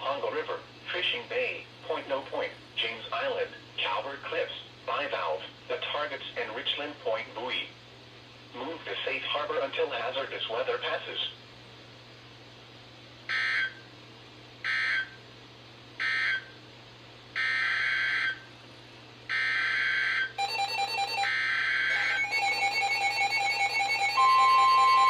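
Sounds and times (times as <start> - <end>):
pulsing electronic alarm tone: 13.3 - 13.8, 14.7 - 15.2, 16.0 - 16.5, 17.4 - 18.5, 19.3 - 25.0.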